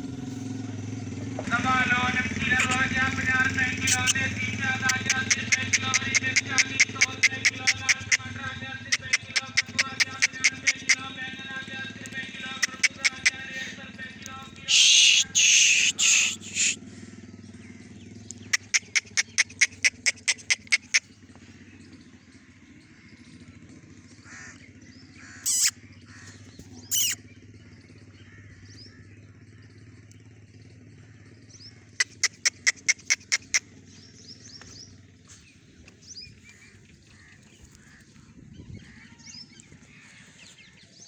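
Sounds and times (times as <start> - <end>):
bird calling harsh notes: 1.5 - 16.8, 18.4 - 21.3, 25.2 - 27.3, 31.8 - 35.4
loud noisy bursts: 14.6 - 16.8.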